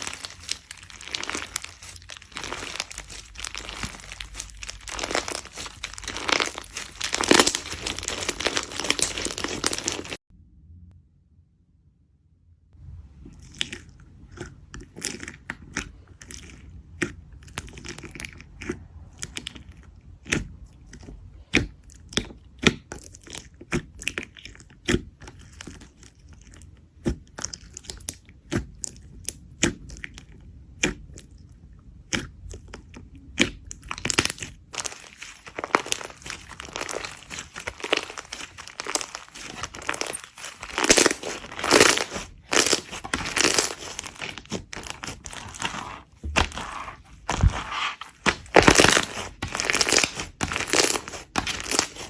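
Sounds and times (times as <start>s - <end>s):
slime popping and crackling: 0.0s - 10.2s, 32.1s - 52.0s.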